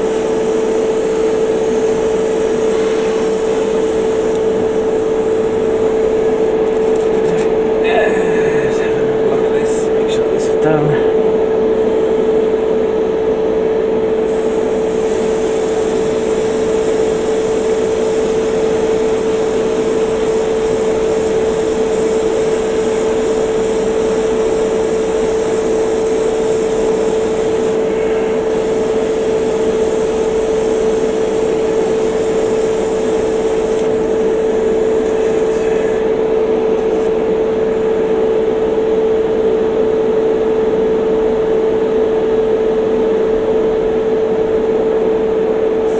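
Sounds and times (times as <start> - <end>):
airbrush spraying hiss: 0.0 - 7.2, 14.0 - 37.2
air compressor hum: 0.0 - 45.9.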